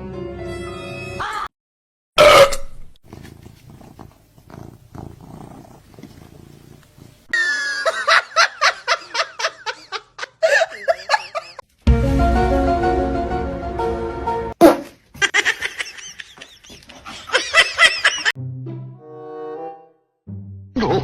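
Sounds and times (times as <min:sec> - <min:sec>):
cat purring: 0:03.0 - 0:07.3.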